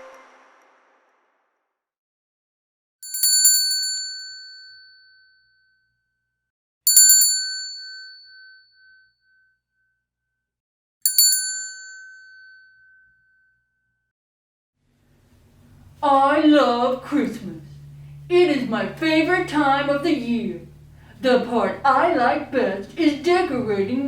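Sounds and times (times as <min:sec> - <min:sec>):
bell ringing: 0:03.0 - 0:04.3.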